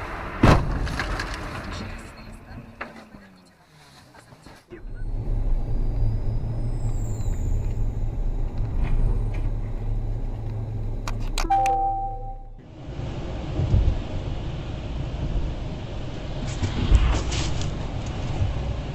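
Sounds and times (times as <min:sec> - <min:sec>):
car engine and road noise: 0:00.0 - 0:18.9
brief chime-like tone: 0:11.4 - 0:12.6.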